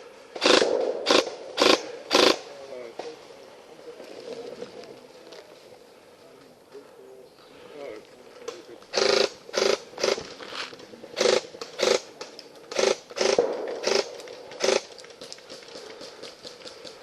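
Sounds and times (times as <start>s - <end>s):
airsoft gun firing bursts: 0.4s - 2.4s, 8.9s - 10.2s, 11.2s - 12.1s, 12.7s - 14.9s.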